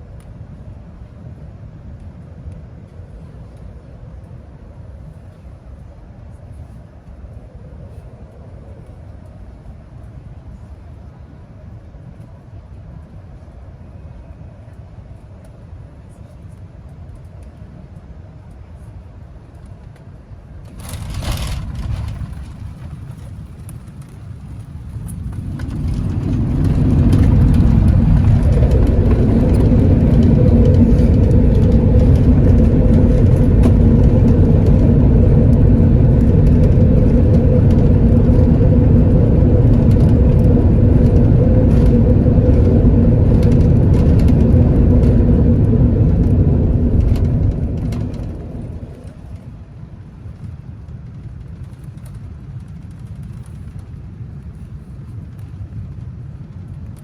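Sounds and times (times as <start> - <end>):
aircraft cabin rumble: 0.0 - 57.0
wheels touching down: 20.7 - 49.4
engine reverse thrust roar: 24.9 - 49.5.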